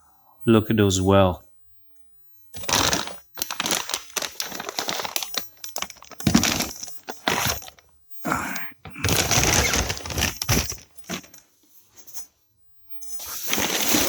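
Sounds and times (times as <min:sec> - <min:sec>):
packing material crumpling: 0:02.6 - 0:11.4, 0:13.3 - 0:14.0.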